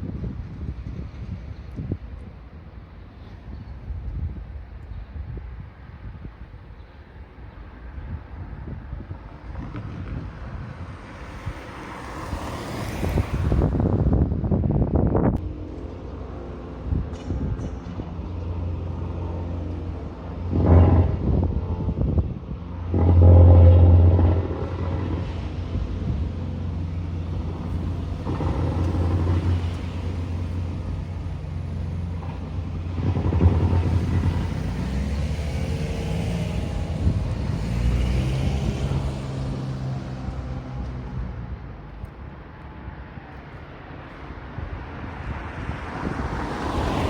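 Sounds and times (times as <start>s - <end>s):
vehicles passing by: 0.0s - 47.0s
low engine rumble: 8.6s - 43.3s.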